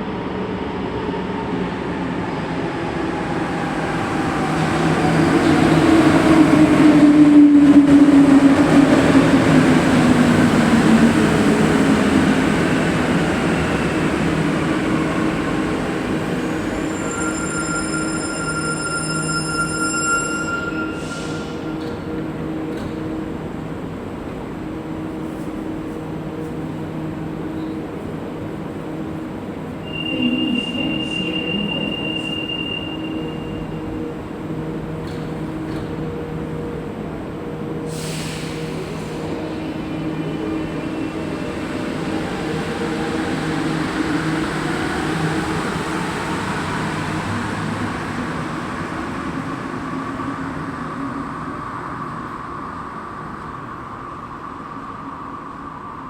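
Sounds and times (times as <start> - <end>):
metro train humming: 0.0 - 56.0
high squeal from train wheels: 12.6 - 22.1, 29.8 - 34.0, 37.9 - 56.0.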